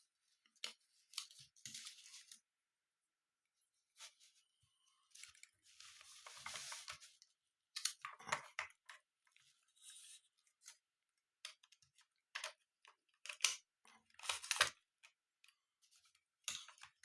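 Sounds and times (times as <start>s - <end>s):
film and plastic rustling: 0.5s - 2.4s, 5.1s - 8.5s.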